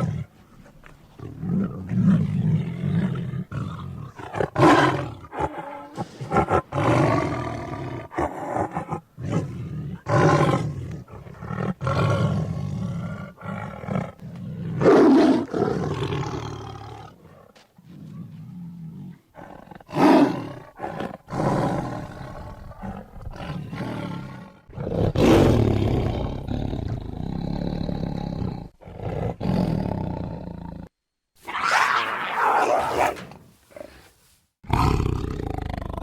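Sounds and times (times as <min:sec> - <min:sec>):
big cat roaring and snarling: 0:31.4 - 0:36.0.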